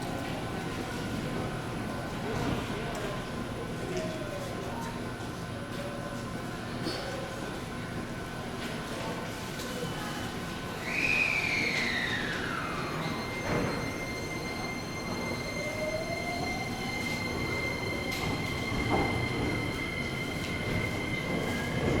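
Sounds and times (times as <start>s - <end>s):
train rumble: 11.4s - 22.0s
electric train motor whine: 11.7s - 22.0s.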